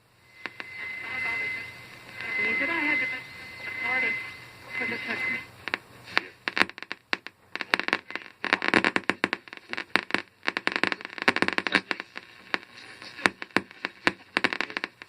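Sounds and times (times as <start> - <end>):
radio static crackling: 0.0 - 15.0.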